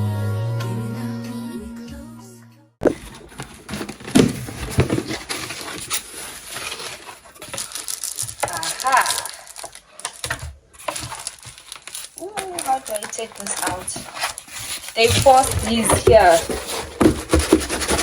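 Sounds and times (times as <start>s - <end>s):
music: 0.0s - 2.8s
knocks and clicks of handling: 2.8s - 18.0s
plastic packaging crinkling: 2.8s - 18.0s.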